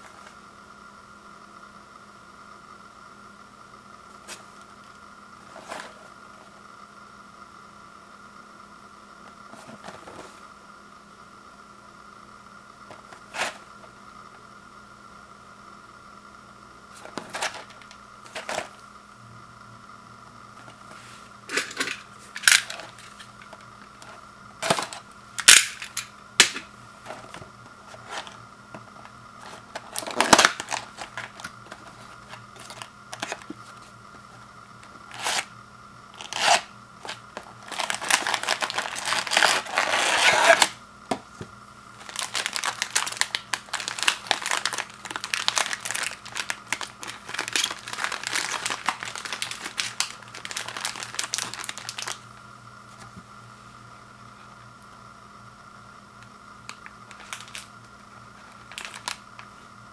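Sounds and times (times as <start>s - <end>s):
plastic packets crinkling: 29.4s - 33.6s, 36.2s - 40.7s, 42.0s - 52.2s, 56.7s - 57.7s, 58.4s - 59.5s.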